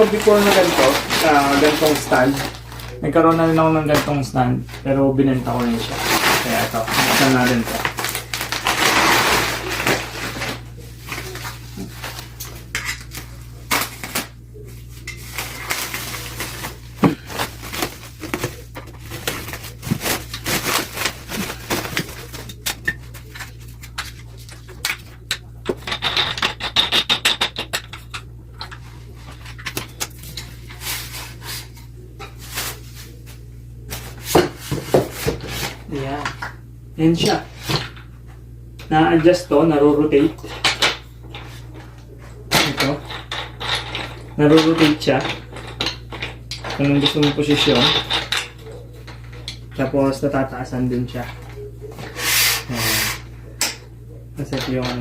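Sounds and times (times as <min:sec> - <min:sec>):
rustling: 0:00.0 - 0:25.0.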